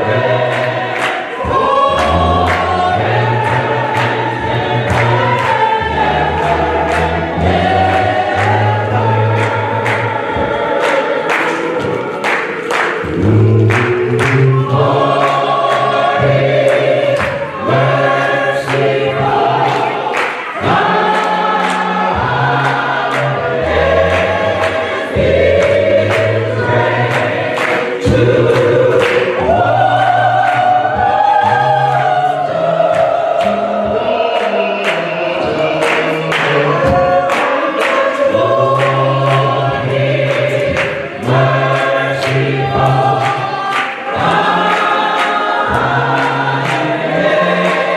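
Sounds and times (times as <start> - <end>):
drum beat: 0.0 - 47.9
gospel choir singing: 0.0 - 47.9
bass line: 13.0 - 19.7.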